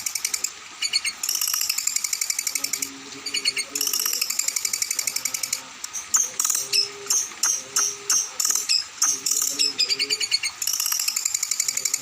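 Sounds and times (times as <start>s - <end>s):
songbird rattling trill: 0.0s - 12.0s.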